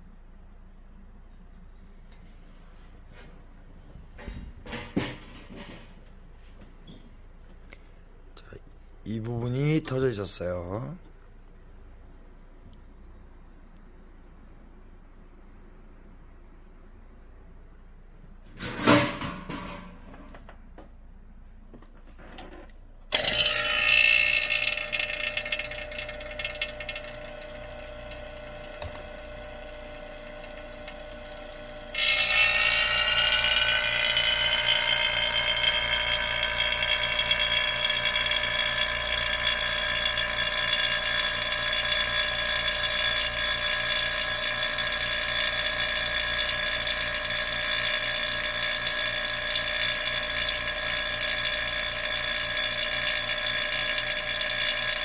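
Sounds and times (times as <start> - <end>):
motor-driven machine whining: 23.1 - 55.0.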